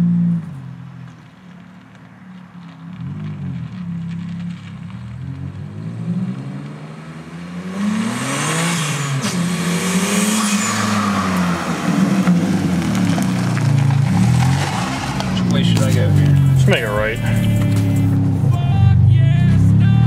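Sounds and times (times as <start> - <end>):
car engine revving: 0.0 - 20.0.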